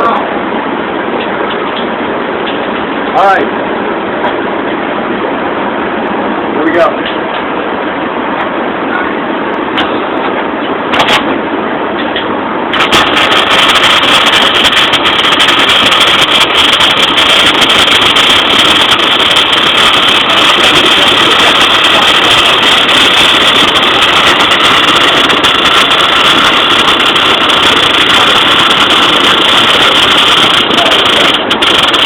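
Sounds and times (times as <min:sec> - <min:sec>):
welding arc crackling: 0:09.6 - 0:32.0.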